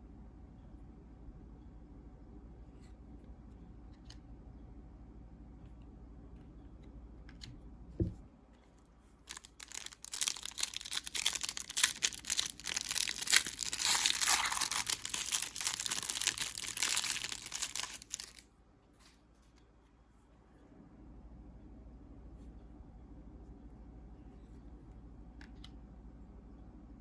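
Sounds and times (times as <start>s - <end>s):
short thump: 8.0s - 8.3s
wrapper tearing and crinkling: 9.3s - 18.4s.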